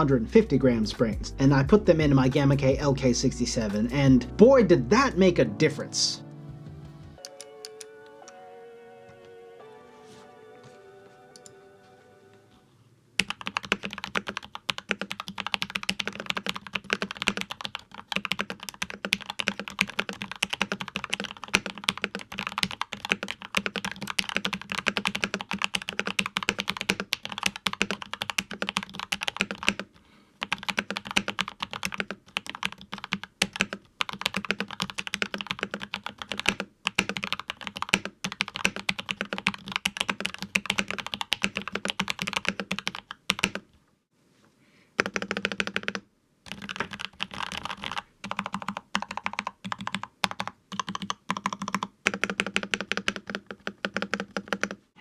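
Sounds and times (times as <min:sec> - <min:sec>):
mechanical keyboard typing: 0:13.2 - 0:43.6, 0:45.0 - 0:54.8.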